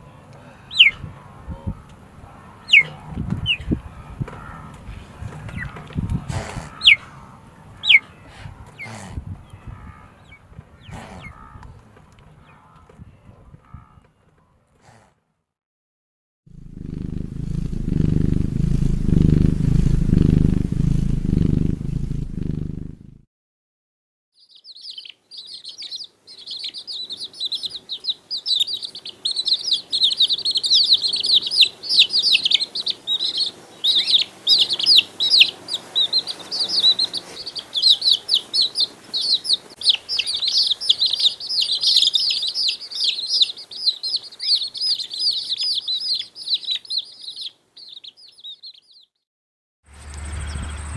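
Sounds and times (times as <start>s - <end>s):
many birds chirping: 0.0s - 14.6s, 24.4s - 49.1s, 50.0s - 50.9s
loud low sound: 16.5s - 23.2s, 49.9s - 50.9s.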